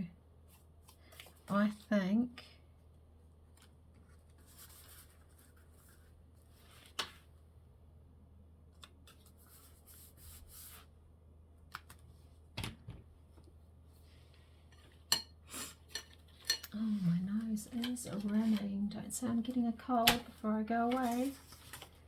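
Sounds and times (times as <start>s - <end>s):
paper sliding and rustling: 3.6s - 7.3s, 20.1s - 22.0s.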